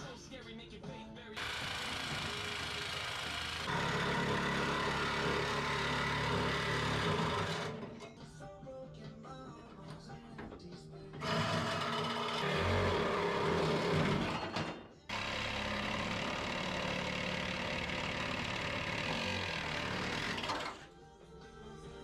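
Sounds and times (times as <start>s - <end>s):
background music: 0.0s - 3.2s, 4.2s - 22.0s
power tool cutting sheet steel: 1.4s - 8.0s, 11.2s - 20.9s.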